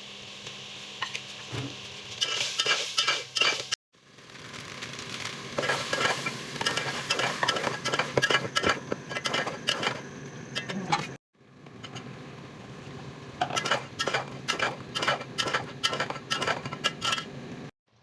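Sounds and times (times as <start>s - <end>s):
food sizzling in a pot: 0.0s - 10.0s
utensil scraping and stirring: 2.2s - 3.8s, 5.6s - 12.2s, 12.8s - 17.7s.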